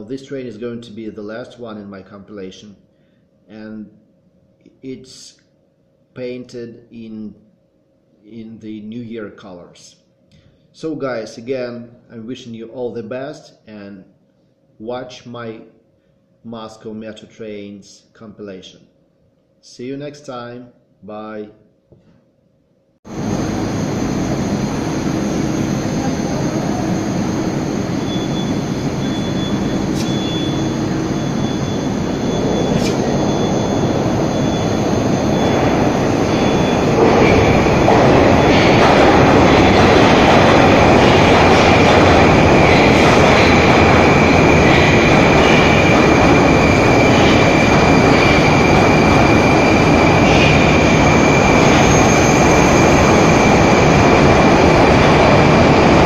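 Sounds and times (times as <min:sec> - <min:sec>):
high steady whine: 0:23.0 - 0:56.0
metro train rumble: 0:23.1 - 0:56.0.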